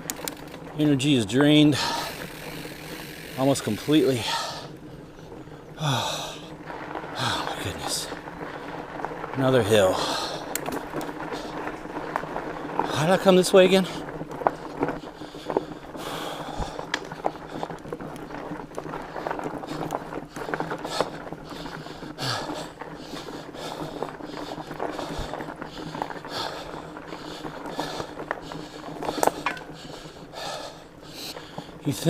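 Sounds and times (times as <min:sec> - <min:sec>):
bike clicks and knocks: 0:00.0 - 0:04.2, 0:05.6 - 0:32.0
tyres on dirt trail: 0:00.0 - 0:32.0
person breathing heavily: 0:01.6 - 0:02.9, 0:04.0 - 0:04.8, 0:05.7 - 0:08.8, 0:09.7 - 0:11.8, 0:12.7 - 0:17.8, 0:19.0 - 0:31.9.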